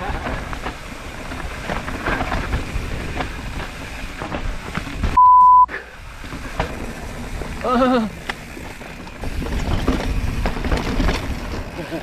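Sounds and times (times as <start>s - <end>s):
bike knocks and rattles: 0.0s - 5.2s, 6.1s - 12.0s
bike tyre noise: 0.0s - 12.0s
censor bleep: 5.2s - 5.7s.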